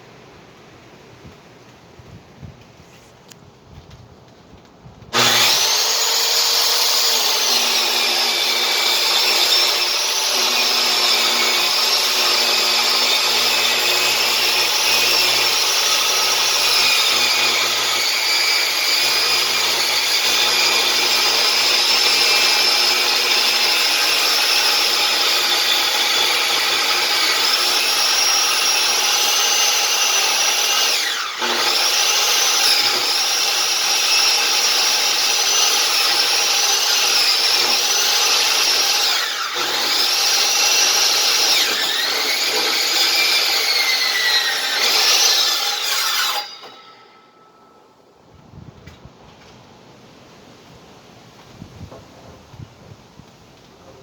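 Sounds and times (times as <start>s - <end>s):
circular saw ripping a board: 5.1s - 47.2s.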